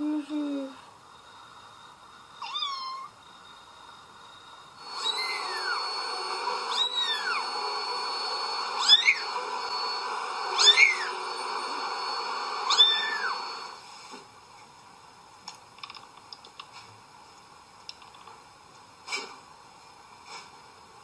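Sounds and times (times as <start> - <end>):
steady noise: 0.0 - 21.0
cat meowing: 2.4 - 3.1, 5.0 - 5.8, 6.7 - 7.4, 8.8 - 9.2, 10.6 - 11.1, 12.7 - 13.4.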